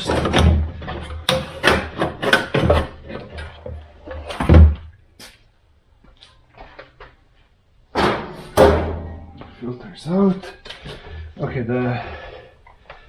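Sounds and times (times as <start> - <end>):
thump: 8.0 - 9.6.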